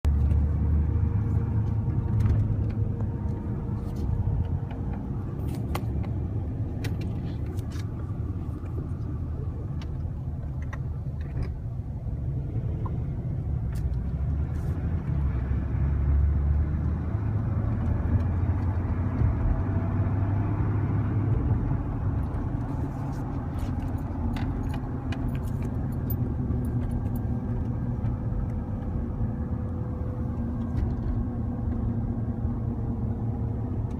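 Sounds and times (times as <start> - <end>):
road and drivetrain rumble: 0.0 - 33.9.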